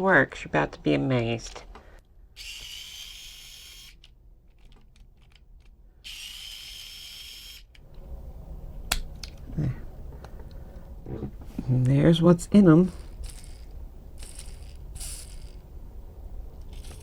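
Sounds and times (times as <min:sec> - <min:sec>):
small electric motor whirring: 0:02.4 - 0:07.9, 0:12.9 - 0:17.0.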